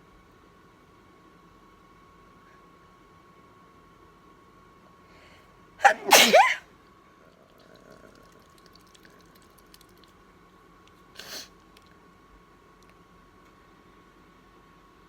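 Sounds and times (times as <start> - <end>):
woman sneezing: 5.8 - 6.6.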